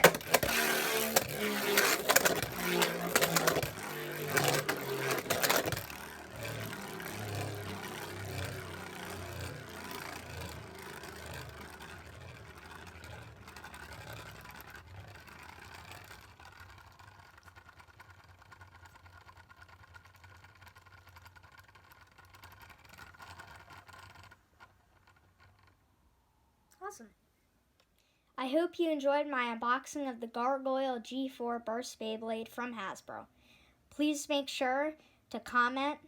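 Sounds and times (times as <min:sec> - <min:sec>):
spinning top whirring in plastic arena: 0:00.0 - 0:26.2.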